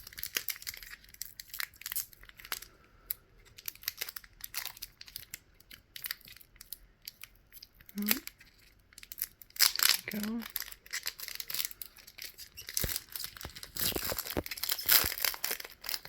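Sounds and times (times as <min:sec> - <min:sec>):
foil wrapper tearing and crinkling: 0:00.0 - 0:02.8, 0:03.4 - 0:16.0.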